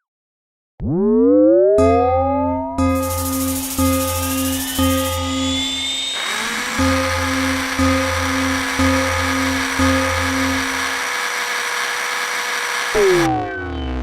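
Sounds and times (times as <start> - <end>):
rising tone: 0.8 - 14.0
level-crossing alarm pulsing tone: 0.9 - 11.8
steady buzzing whine: 2.9 - 14.0.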